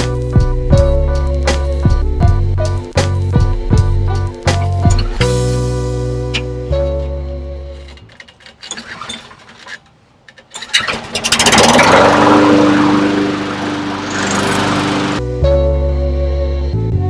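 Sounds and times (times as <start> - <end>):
handling noises: 6.3 - 11.1
lawn mower engine running: 10.5 - 15.2.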